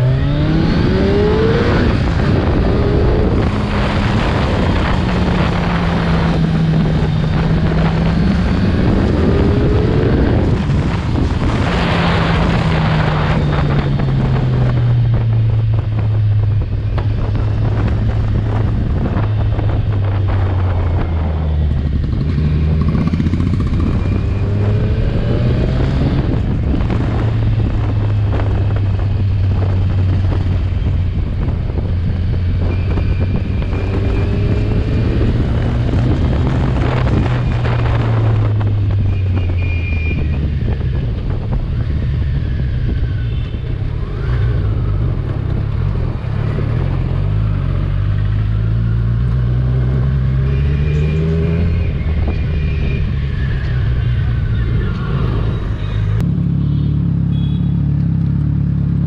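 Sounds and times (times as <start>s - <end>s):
motorcycle engine running: 0.9s - 25.2s, 51.7s - 59.0s.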